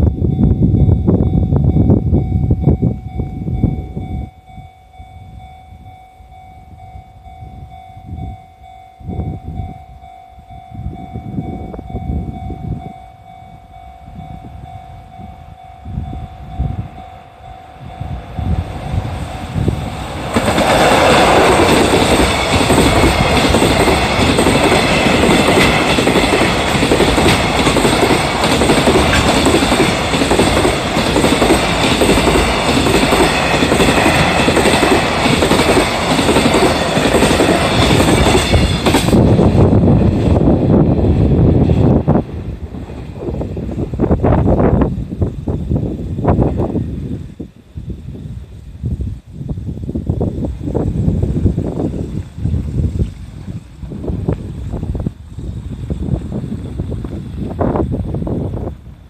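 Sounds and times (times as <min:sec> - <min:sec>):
freight train passing: 0:00.0 - 0:59.0
wind gusts on microphone: 0:00.0 - 0:59.0
level crossing bell ringing: 0:00.2 - 0:19.6.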